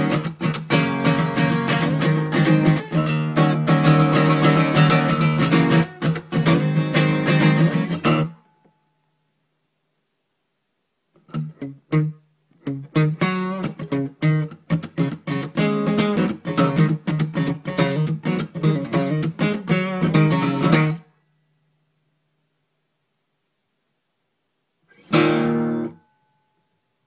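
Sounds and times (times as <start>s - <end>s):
acoustic guitar strumming chords: 0.0s - 8.8s, 11.2s - 21.1s, 24.9s - 26.4s.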